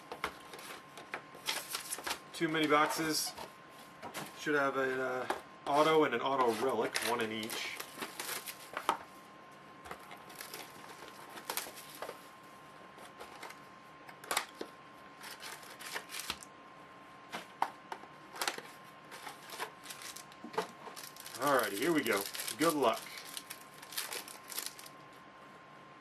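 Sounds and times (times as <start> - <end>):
cardboard and wrappers crinkling: 1.4 - 3.0, 5.8 - 9.0, 10.0 - 12.2, 15.2 - 16.4, 18.4 - 25.0.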